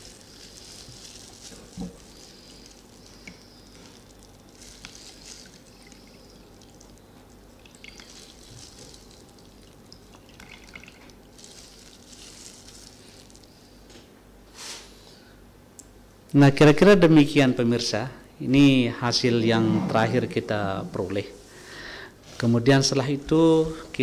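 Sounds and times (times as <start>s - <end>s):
juice dripping and trickling: 0.0s - 13.7s.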